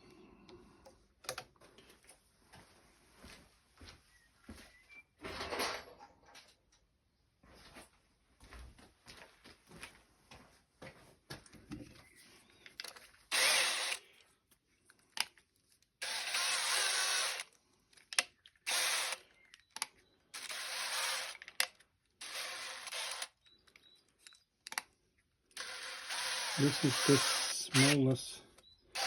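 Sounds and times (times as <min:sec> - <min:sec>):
electric drill drilling: 0:13.3 - 0:14.1, 0:16.0 - 0:17.5, 0:18.6 - 0:19.2, 0:20.3 - 0:21.6, 0:22.2 - 0:23.4, 0:25.6 - 0:28.0.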